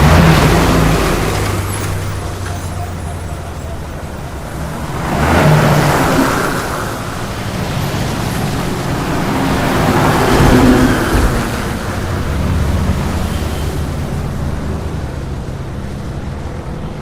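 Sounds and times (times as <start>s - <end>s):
highway traffic rumble: 0.0s - 17.0s
vehicle passing by: 3.2s - 16.3s.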